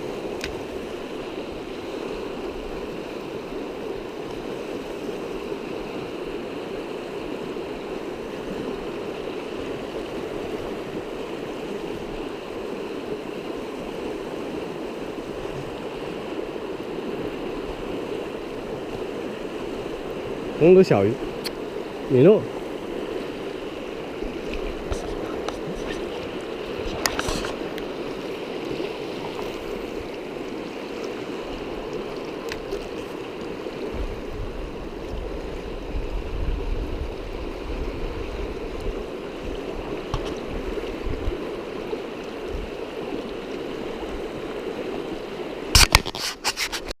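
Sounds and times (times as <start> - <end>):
stream water rushing: 0.0 - 47.0.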